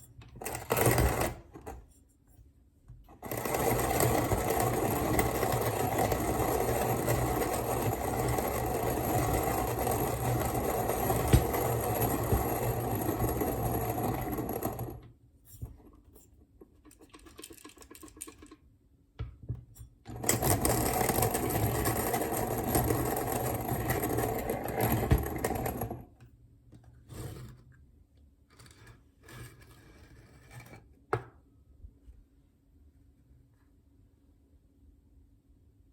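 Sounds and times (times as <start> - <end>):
hand coffee mill grinding beans: 0.3 - 1.9, 3.1 - 15.0, 20.1 - 26.0.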